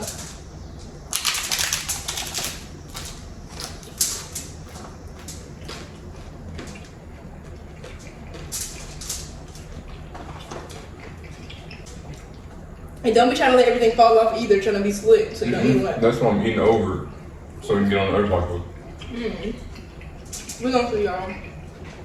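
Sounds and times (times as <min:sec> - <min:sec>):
crunching on hard taco shells: 0:00.0 - 0:12.1.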